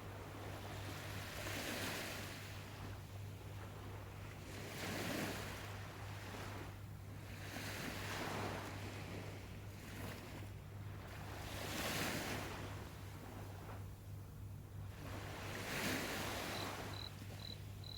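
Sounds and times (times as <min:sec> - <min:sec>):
sea waves washing ashore: 0:03.7 - 0:13.8, 0:14.8 - 0:17.9.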